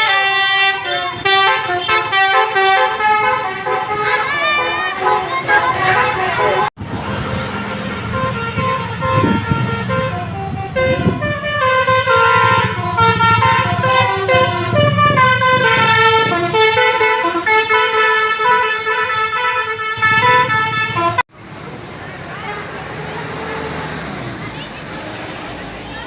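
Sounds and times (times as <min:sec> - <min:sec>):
bus engine rumble: 0:00.0 - 0:18.3, 0:20.0 - 0:26.0
multi-tone air horns melody: 0:00.0 - 0:21.3.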